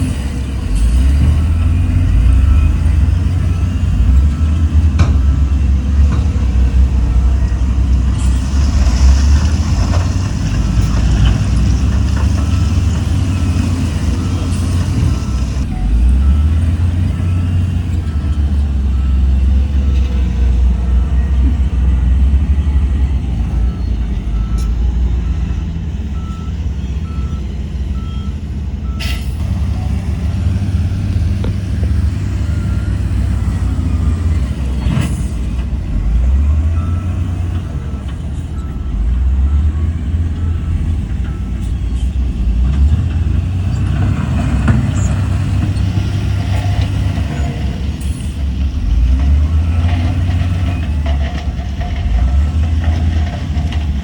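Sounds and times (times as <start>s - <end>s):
reversing alarm beeping: 0.0s - 9.9s, 10.7s - 35.6s, 36.2s - 42.3s
heavy machinery diesel engine: 0.0s - 54.0s.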